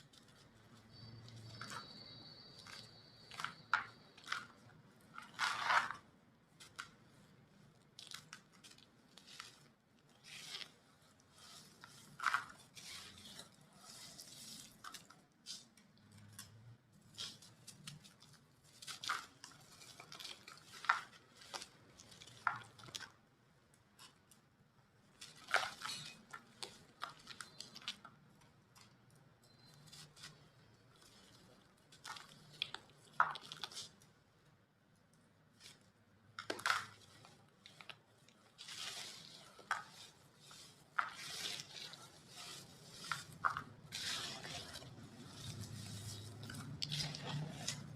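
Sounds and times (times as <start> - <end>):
dried cement crumbling: 0.1 - 23.2, 36.4 - 47.9.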